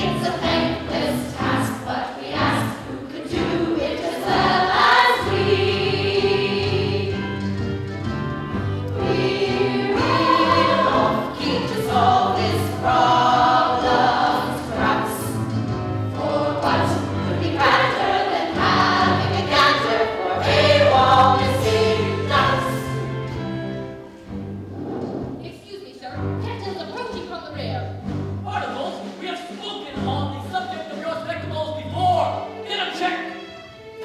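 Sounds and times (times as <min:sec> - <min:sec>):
ensemble singing together: 0:00.0 - 0:07.5, 0:08.6 - 0:24.0
instrumental accompaniment with bass: 0:00.0 - 0:25.4, 0:26.2 - 0:28.7.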